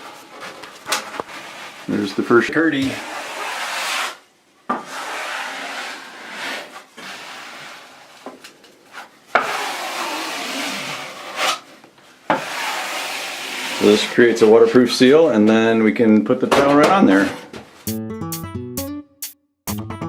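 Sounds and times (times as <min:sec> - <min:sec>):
trowel scraping over membrane: 0:01.2 - 0:08.2, 0:12.3 - 0:15.1.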